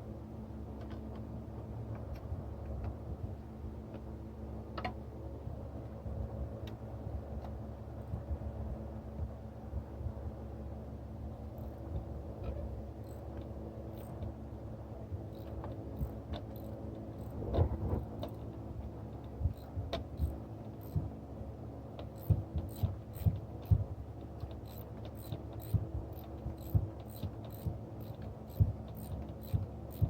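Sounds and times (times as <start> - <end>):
steady hum: 0.0 - 30.0
hand ratchet clicking: 19.5 - 21.0, 22.0 - 23.8, 24.4 - 30.0.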